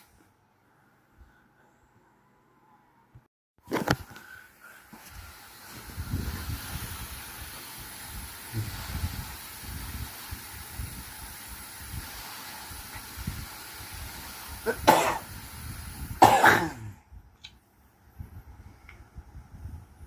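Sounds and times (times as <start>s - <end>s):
steady hiss: 3.8s - 17.0s.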